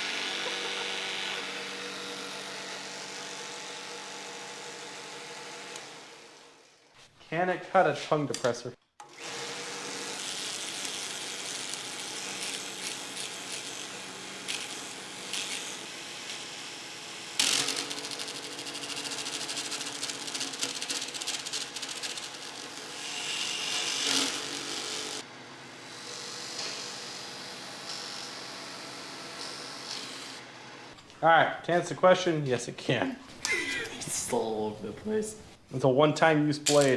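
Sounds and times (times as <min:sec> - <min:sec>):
small table saw running: 0:00.0 - 0:06.8, 0:09.0 - 0:30.5.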